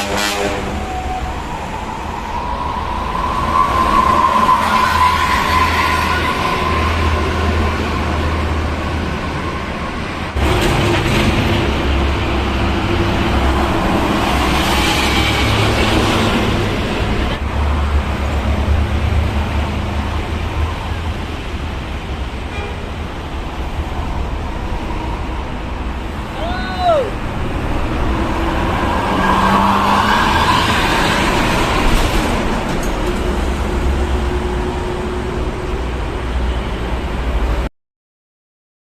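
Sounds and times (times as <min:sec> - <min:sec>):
heavy traffic passing: 0:00.0 - 0:37.7
vehicle passing loudly: 0:10.4 - 0:20.5, 0:27.2 - 0:32.6.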